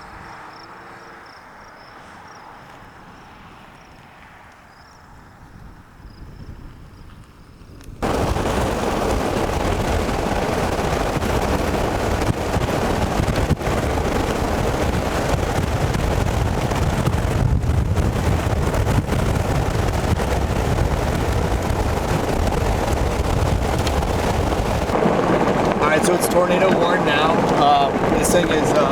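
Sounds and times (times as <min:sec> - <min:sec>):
storm wind buffeting microphone: 0:02.2 - 0:28.9.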